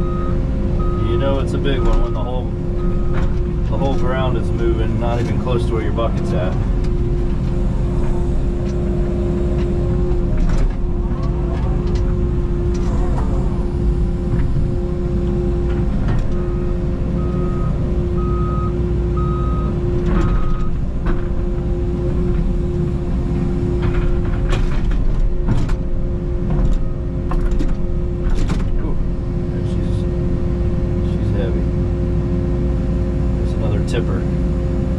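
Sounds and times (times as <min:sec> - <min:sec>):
backup alarm beeps: 0:00.0 - 0:04.0, 0:16.4 - 0:20.8
excavator engine and hydraulics: 0:00.0 - 0:34.9
excavator clunks: 0:01.6 - 0:18.6, 0:19.9 - 0:29.4.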